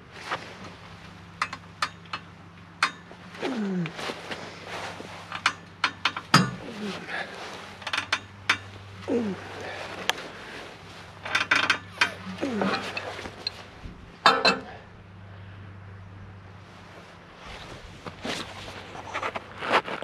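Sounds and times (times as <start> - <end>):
steady low hum: 0.0 - 20.0
metallic clinks and clanks: 14.2 - 14.8.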